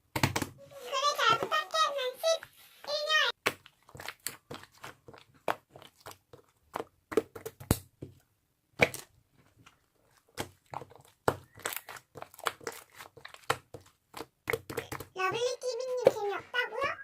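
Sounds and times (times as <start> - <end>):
slime squished by hand: 3.4 - 8.0, 10.0 - 15.1.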